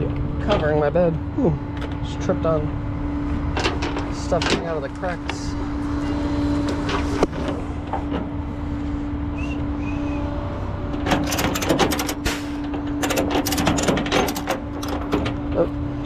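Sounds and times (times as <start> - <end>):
tow truck humming: 7.6 - 16.0
metallic clicks and rattles: 11.0 - 15.4.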